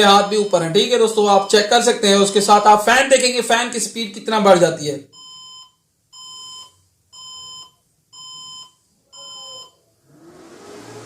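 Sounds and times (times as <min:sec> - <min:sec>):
computer speaker beeps: 0:00.0 - 0:02.8, 0:05.2 - 0:09.8
cooling fan rushing air: 0:10.1 - 0:11.0.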